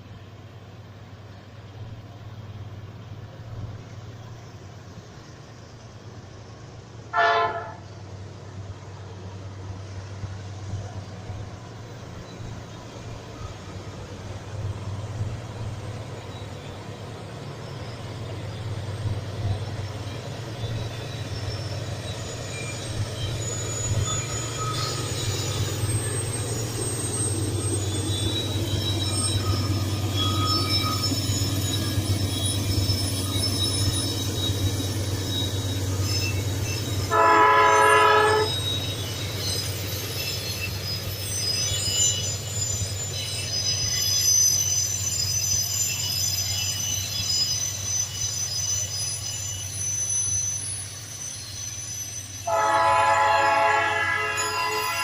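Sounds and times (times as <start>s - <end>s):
train rumbling past: 0.0s - 55.0s
train horn blast: 7.1s - 7.9s, 37.1s - 38.6s, 52.5s - 55.0s
wheel squeals: 10.7s - 55.0s.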